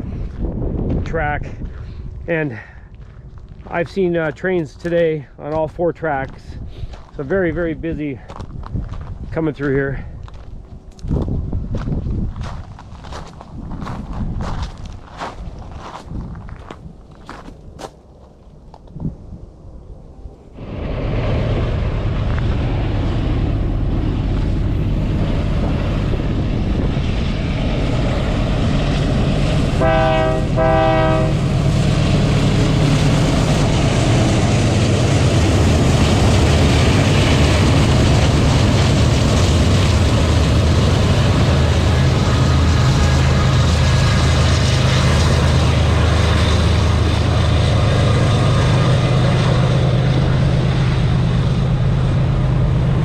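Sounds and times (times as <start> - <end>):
diesel locomotives running: 0.0 - 8.6, 19.9 - 53.0
train horn blasts: 29.7 - 31.6.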